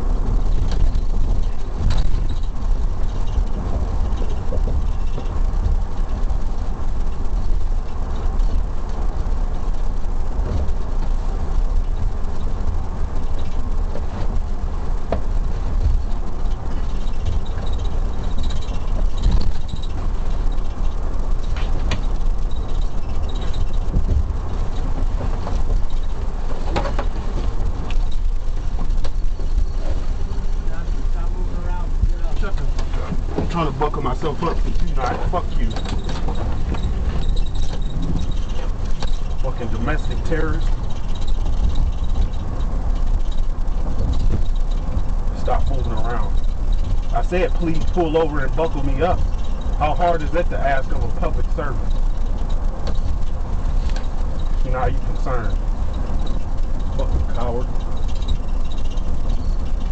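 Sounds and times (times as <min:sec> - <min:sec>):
car road and engine rumble: 0:00.0 - 0:59.9
light clicks and knocks: 0:13.2 - 0:59.9.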